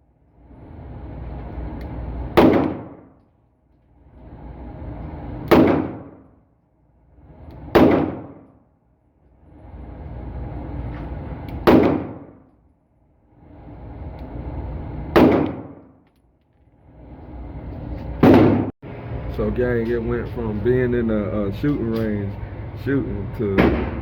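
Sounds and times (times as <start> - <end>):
gunshots: 2.4 - 3.2, 5.5 - 6.2, 7.7 - 8.6, 11.6 - 12.5, 15.1 - 16.0, 18.2 - 18.7, 23.6 - 24.0.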